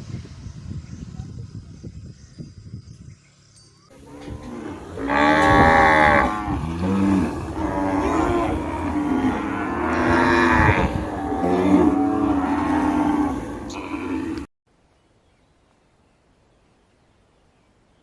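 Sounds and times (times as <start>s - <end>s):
cattle mooing: 3.9s - 14.5s.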